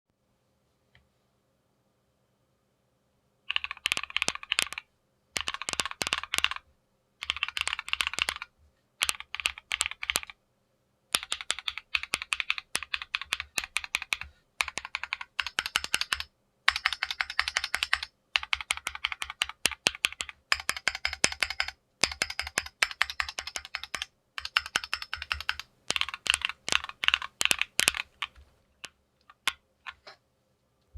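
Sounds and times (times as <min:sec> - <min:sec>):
rapid keyboard keystrokes: 0:03.5 - 0:04.8, 0:05.4 - 0:06.6, 0:07.2 - 0:10.4, 0:11.1 - 0:30.0.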